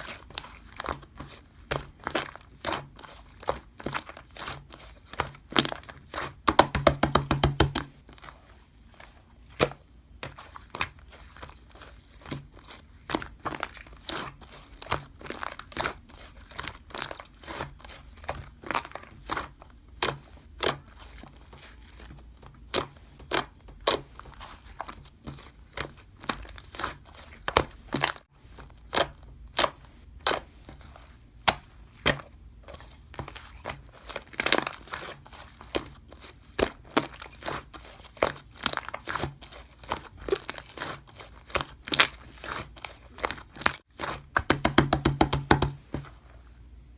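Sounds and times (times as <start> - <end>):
slime squished by hand popping: 6.5 - 7.9.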